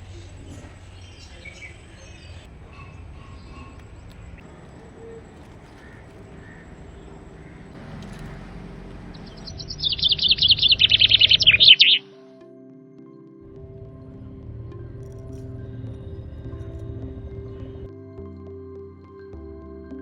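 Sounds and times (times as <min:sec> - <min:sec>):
faint low hum: 0:00.0 - 0:11.6
bird chirping trill: 0:00.0 - 0:12.1
distant bird chirps: 0:00.0 - 0:12.1.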